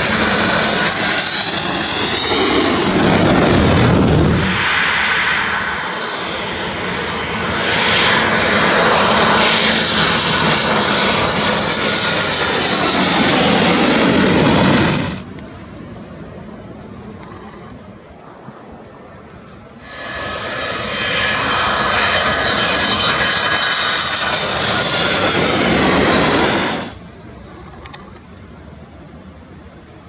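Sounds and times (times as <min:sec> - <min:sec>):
jet engine roar: 0:00.0 - 0:30.0
high steady whistle: 0:19.8 - 0:25.4.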